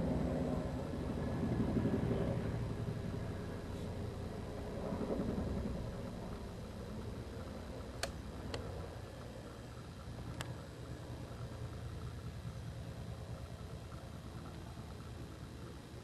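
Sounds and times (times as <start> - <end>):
distant helicopter rumble: 0.0 - 16.0
sharp clicks: 7.9 - 9.3, 10.2 - 10.7.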